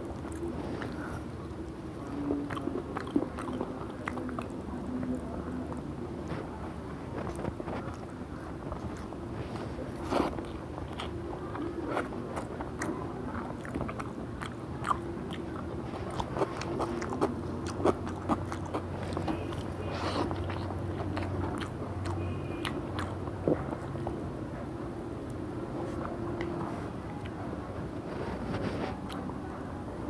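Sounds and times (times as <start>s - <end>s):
person chewing food: 0.0s - 6.4s, 7.1s - 24.2s
low steady hum: 0.0s - 30.0s.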